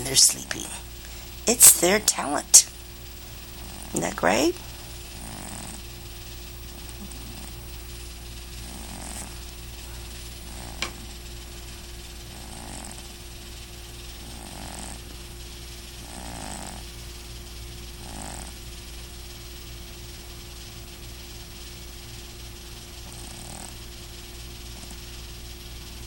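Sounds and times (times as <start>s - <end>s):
steady low hum: 0.0s - 26.0s
cat snoring softly: 3.4s - 7.8s, 8.5s - 11.1s, 11.8s - 15.4s, 16.0s - 17.0s, 17.8s - 18.8s, 23.0s - 24.0s, 24.6s - 25.1s.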